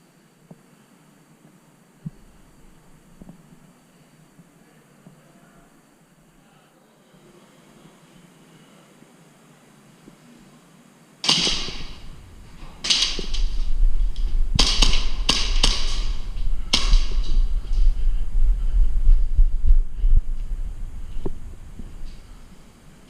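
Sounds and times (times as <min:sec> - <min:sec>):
airsoft gunfire cracks: 0:11.2 - 0:17.6
low rumble: 0:11.5 - 0:23.0.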